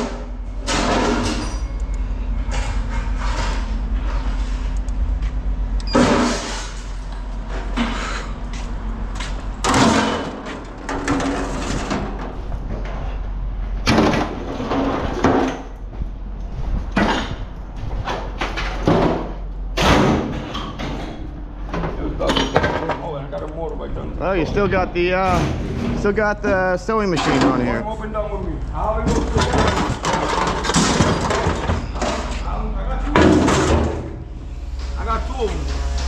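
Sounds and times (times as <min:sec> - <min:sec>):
steady low hum: 0:00.0 - 0:36.0
scrap metal clanking: 0:09.6 - 0:13.2, 0:29.0 - 0:32.6.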